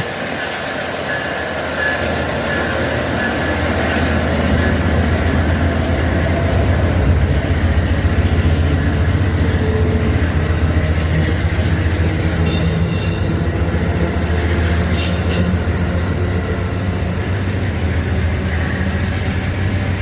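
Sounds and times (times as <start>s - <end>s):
train wheel squeal: 0.0s - 4.9s, 12.3s - 17.7s, 18.5s - 20.0s
train rumbling on rails: 0.0s - 20.0s.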